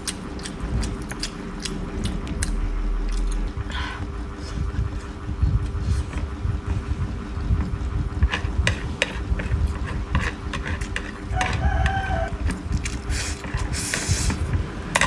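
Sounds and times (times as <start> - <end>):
wet chewing: 0.0 - 3.6.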